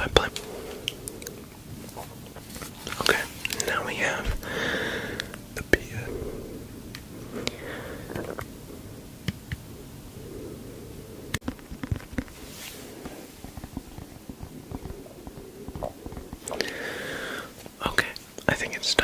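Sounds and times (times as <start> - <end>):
stomach growling: 0.0 - 17.8
stomach pops and clicks: 11.4 - 12.4, 13.0 - 16.8.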